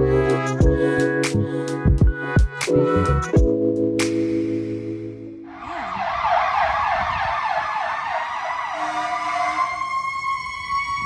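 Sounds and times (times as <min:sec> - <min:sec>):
emergency vehicle siren: 0:05.5 - 0:11.0.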